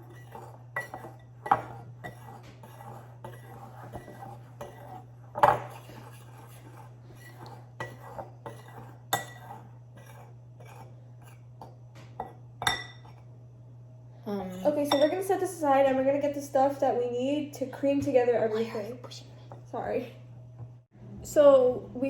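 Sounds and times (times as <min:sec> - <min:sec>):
utensil scraping mixing bowl: 0:00.0 - 0:13.3.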